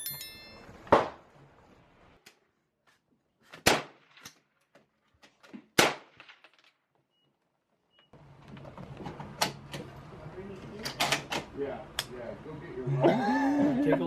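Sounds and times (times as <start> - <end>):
gunshots: 3.6 - 4.2, 5.8 - 6.5.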